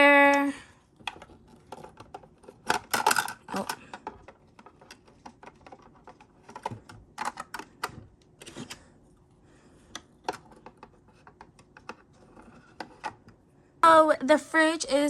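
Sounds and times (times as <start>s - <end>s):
plastic parts clicking and tapping: 1.0s - 8.8s, 9.9s - 13.4s.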